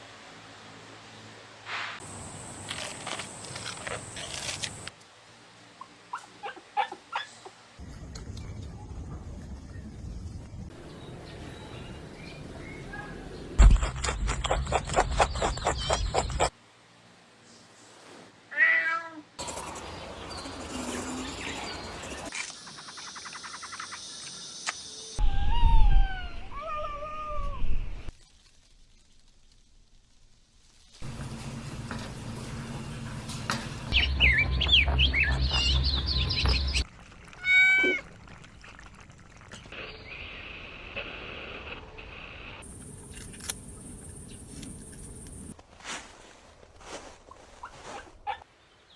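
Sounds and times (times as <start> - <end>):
cat meow: 18.5 - 19.3, 25.2 - 27.7, 37.4 - 38.0.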